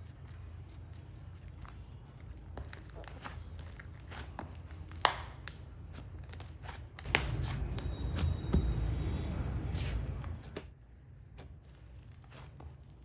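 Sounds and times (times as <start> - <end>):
hands squishing slime: 0.0 - 9.0, 9.6 - 13.0
sharp slime pop: 4.9 - 5.5.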